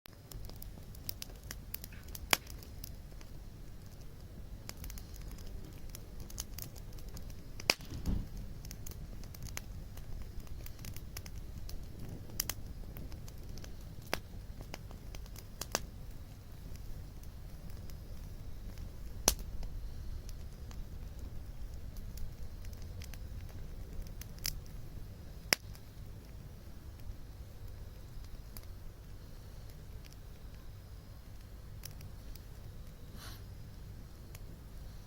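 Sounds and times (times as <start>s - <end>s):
wood fire crackling and popping: 0.1s - 35.0s.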